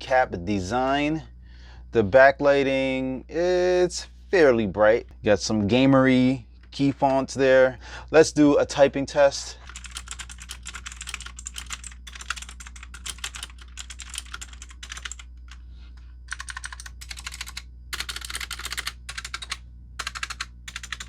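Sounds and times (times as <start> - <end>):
clicky mechanical keyboard typing: 9.7 - 15.6, 16.3 - 21.0.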